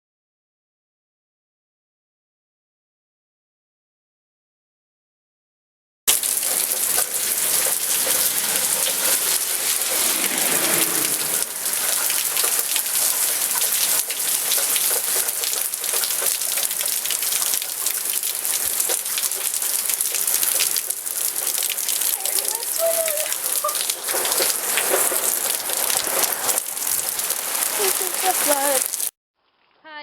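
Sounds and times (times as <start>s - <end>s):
heavy rain on hard surfaces: 6.1s - 29.1s
low rushing swell: 8.0s - 13.1s.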